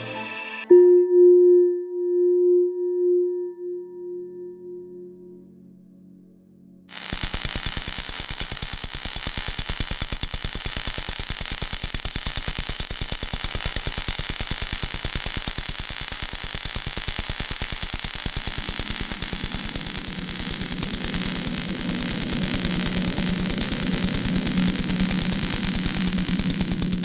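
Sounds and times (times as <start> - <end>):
harsh pulsing hiss: 6.9 - 27.0.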